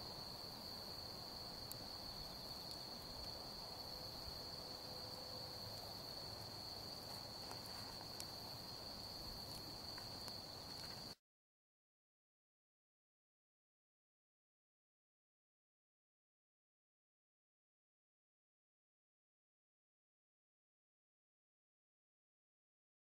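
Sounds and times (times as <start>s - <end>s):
faint outdoor hush: 0.0s - 11.2s
insects trilling: 0.0s - 11.2s
faint ticks: 1.6s - 3.4s, 7.0s - 8.4s, 9.3s - 11.2s.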